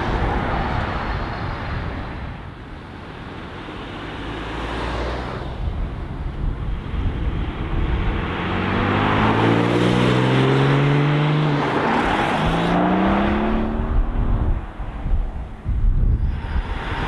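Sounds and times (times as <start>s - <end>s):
sports car engine accelerating: 7.0s - 15.0s.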